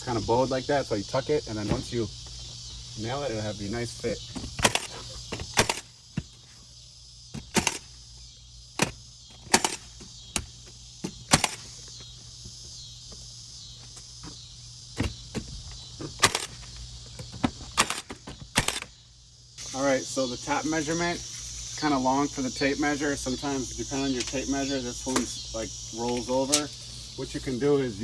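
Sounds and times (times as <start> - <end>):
nails being hammered: 8.8 - 11.7.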